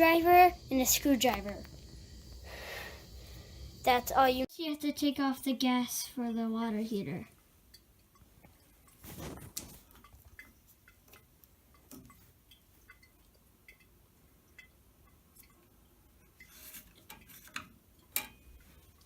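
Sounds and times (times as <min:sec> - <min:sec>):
rustling: 0:08.5 - 0:10.5.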